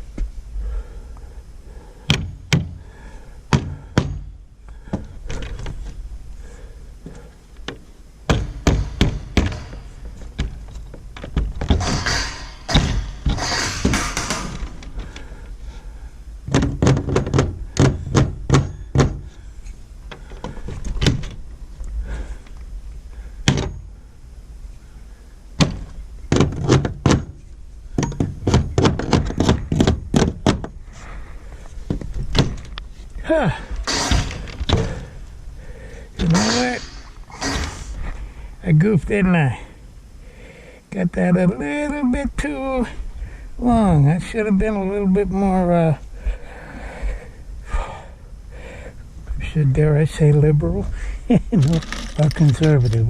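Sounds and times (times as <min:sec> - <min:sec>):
wood knocking and thunking: 0:02.1 - 0:02.8, 0:03.5 - 0:06.0, 0:07.6 - 0:15.3, 0:16.5 - 0:19.3, 0:20.1 - 0:21.4, 0:23.4 - 0:23.8, 0:25.6 - 0:27.4, 0:28.0 - 0:30.8, 0:33.8 - 0:35.1.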